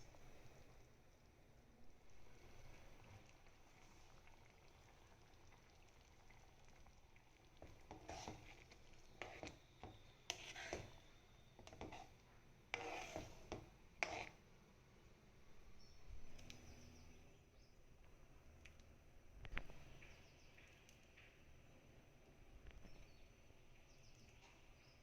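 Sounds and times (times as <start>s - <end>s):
faint kitchen scrapes and knocks: 7.6s - 14.4s.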